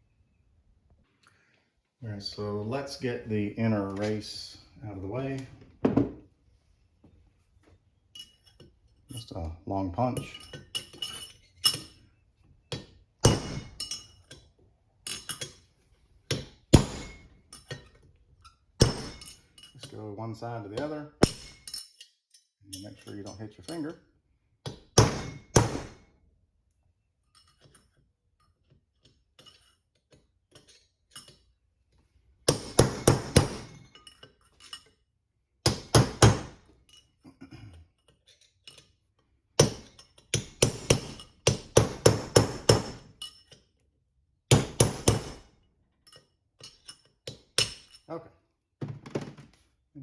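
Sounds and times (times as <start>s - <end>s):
hammer striking steel punch: 13.2s - 13.9s, 16.3s - 17.3s, 18.8s - 19.4s, 21.2s - 21.8s, 25.0s - 26.1s, 32.5s - 33.8s, 35.7s - 36.6s, 39.6s - 43.1s, 44.5s - 45.5s.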